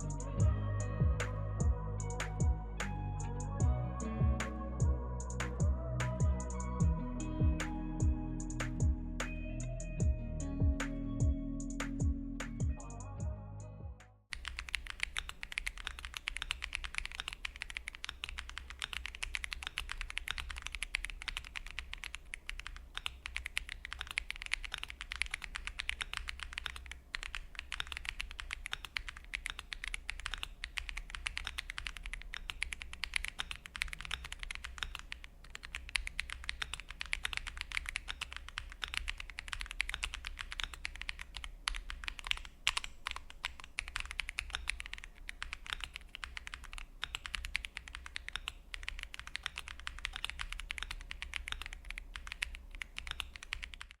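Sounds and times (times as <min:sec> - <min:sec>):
fast mechanical keyboard typing: 0:14.3 - 0:54.0.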